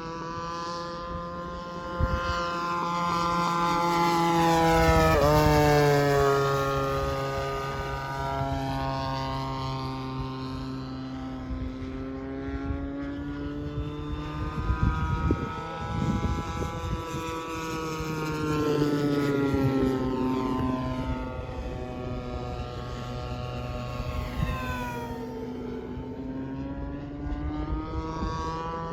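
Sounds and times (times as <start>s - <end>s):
model airplane engine flying past: 0.0s - 28.9s
wind rumbling on microphone: 0.0s - 28.9s.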